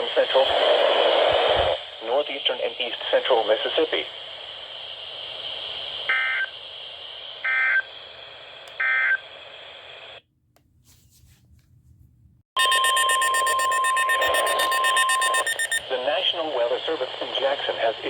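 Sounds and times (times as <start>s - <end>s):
radio hiss: 0.0s - 8.6s, 15.4s - 18.0s
warning alarm tone: 12.6s - 15.8s
rapid beeping: 12.6s - 15.9s.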